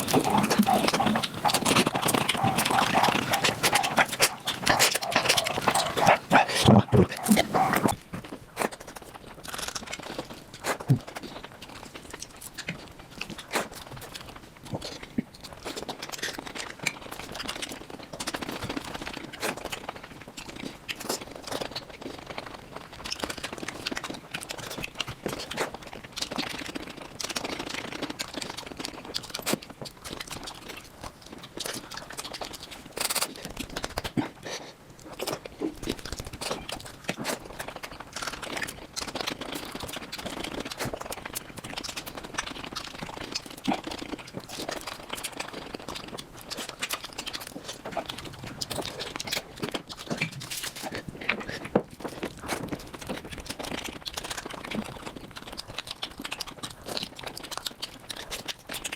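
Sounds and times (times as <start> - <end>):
chewing clicks smacks and crunches: 0.0 - 8.0, 52.0 - 58.9.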